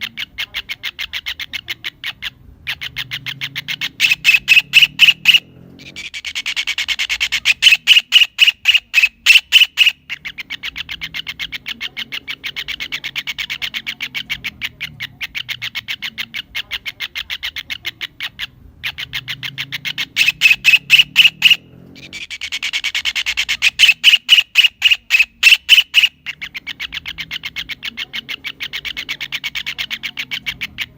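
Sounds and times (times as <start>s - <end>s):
kingfisher calling: 0.0s - 30.9s.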